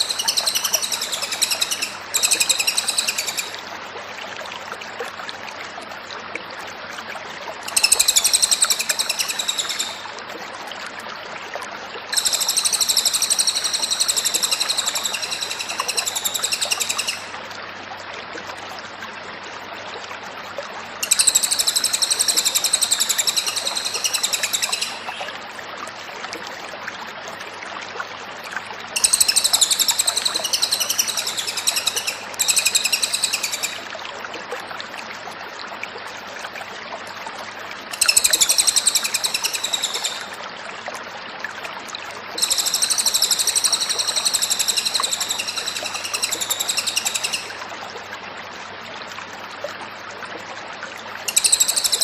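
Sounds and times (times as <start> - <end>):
bird trilling: 0.0 - 3.6, 12.2 - 17.3, 21.0 - 25.2, 29.0 - 33.8, 42.4 - 47.6.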